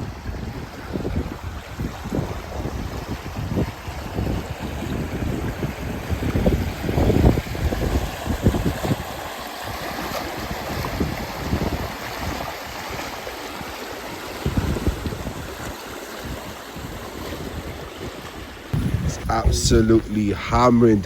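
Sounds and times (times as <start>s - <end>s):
wind buffeting microphone: 0.0s - 9.2s, 9.9s - 13.1s, 14.4s - 15.6s, 18.8s - 21.0s
heavy rain hiss: 18.8s - 21.0s.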